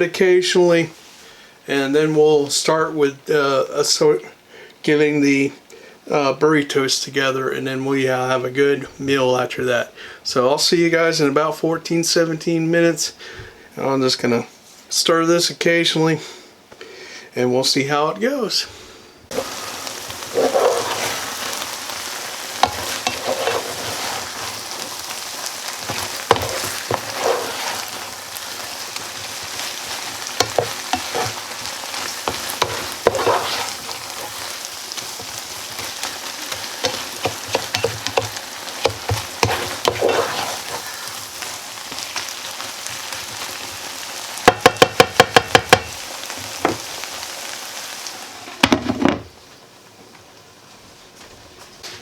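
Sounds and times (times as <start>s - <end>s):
food sizzling in a skillet: 19.3s - 51.1s
scrapes and clicks of stirring: 20.1s - 41.5s.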